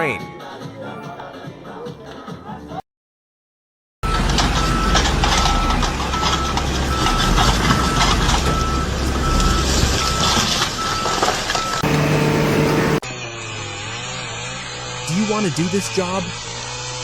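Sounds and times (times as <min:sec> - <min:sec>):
heavy vehicle engine running: 0:04.0 - 0:13.0
reversing alarm beeping: 0:04.0 - 0:13.0.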